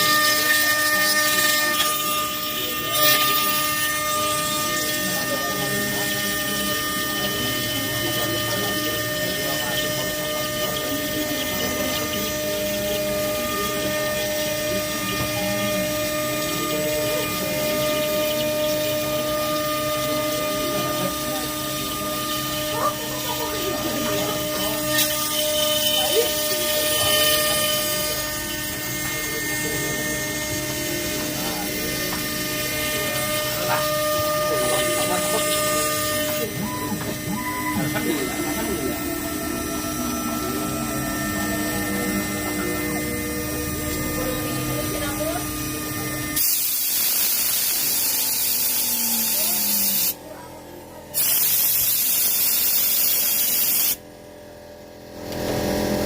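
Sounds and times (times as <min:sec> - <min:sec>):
milling machine whine: 0:00.0 - 0:56.0
compressed air blow gun hissing: 0:46.4 - 0:50.2.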